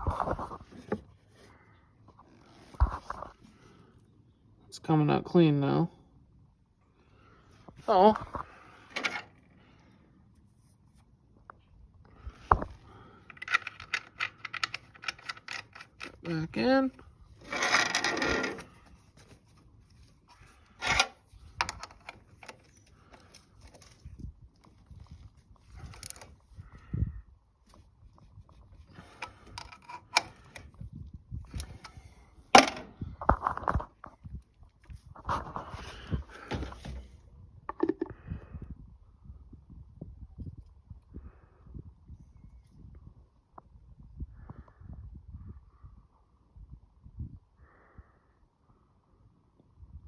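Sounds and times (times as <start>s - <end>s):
hand tools clicking and knocking: 13.3s - 16.3s, 20.8s - 22.5s, 32.6s - 32.9s.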